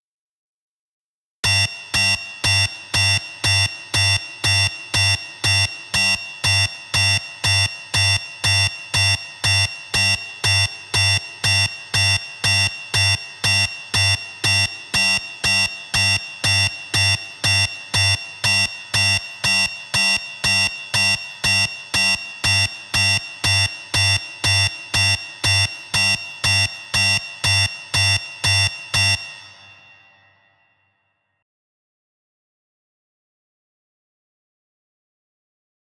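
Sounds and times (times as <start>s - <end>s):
buzzy electronic alarm beeps: 1.4s - 31.2s.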